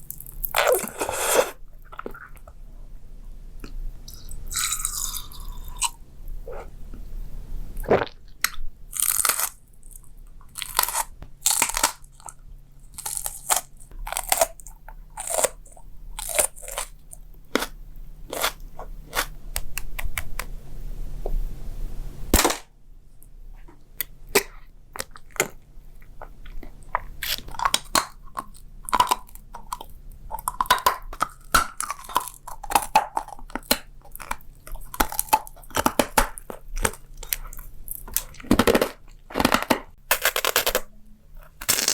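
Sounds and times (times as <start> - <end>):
crisp crunching and chewing: 0.0 - 2.6, 3.6 - 6.0, 7.8 - 19.8, 24.0 - 41.9
sharp crack: 22.3 - 22.8.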